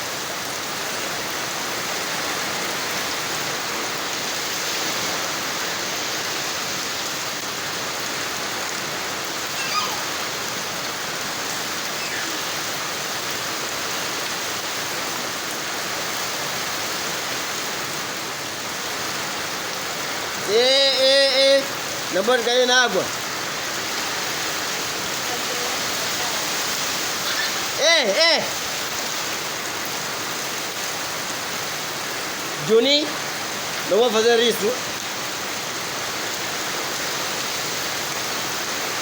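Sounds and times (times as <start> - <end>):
steady rain pouring: 0.0 - 39.0.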